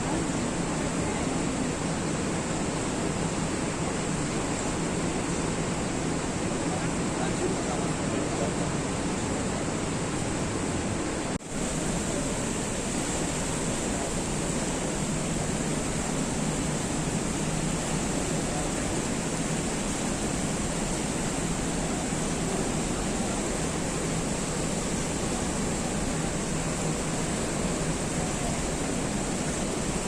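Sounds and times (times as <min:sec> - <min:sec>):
waterfall rushing: 0:00.0 - 0:30.0.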